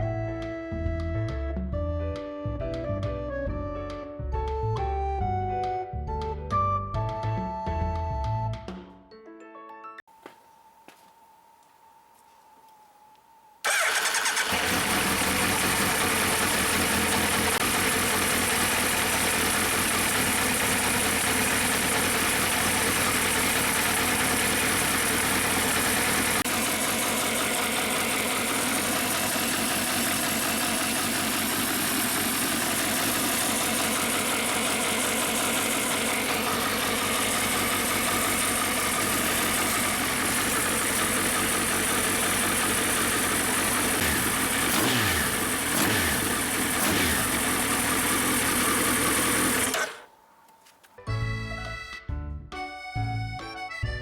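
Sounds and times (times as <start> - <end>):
motorcycle engine idling: 13.6 - 50.4.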